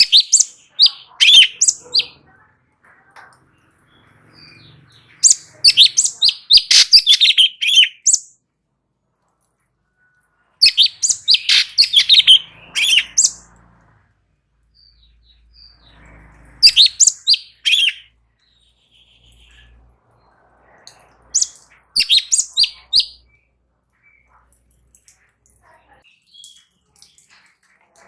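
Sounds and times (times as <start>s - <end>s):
bird high chirping: 0.0s - 2.2s, 3.5s - 8.4s, 10.6s - 13.6s, 14.8s - 25.0s.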